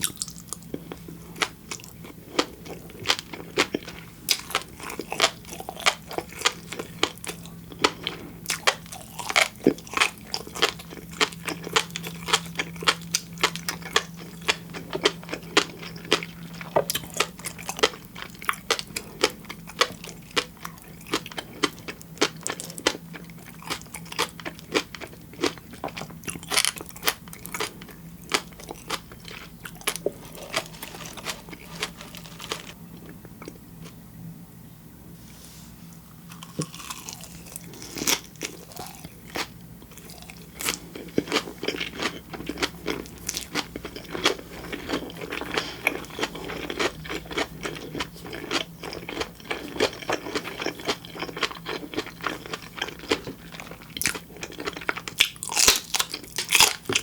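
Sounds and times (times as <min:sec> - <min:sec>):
wet crisp chewing: 0:00.0 - 0:33.6
faint low hum: 0:00.0 - 0:57.0.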